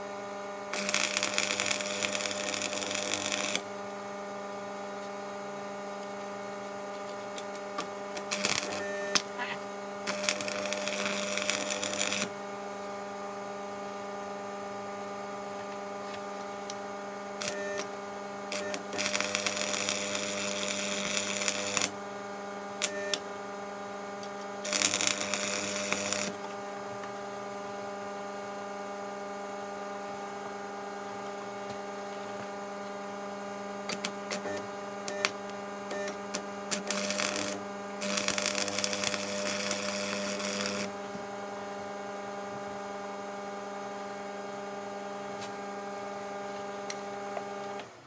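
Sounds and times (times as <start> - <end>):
steady electrical hum: 0.0 - 47.8
welding arc crackle: 0.7 - 4.0, 6.0 - 12.4, 15.6 - 22.1, 22.8 - 23.3, 24.1 - 26.5, 33.7 - 41.6.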